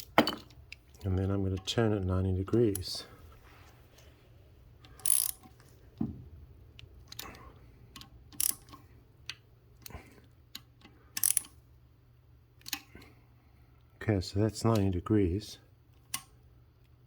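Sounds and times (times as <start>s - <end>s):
socket wrench ratchet clicking: 4.9s - 5.5s, 8.3s - 8.8s, 11.2s - 11.6s.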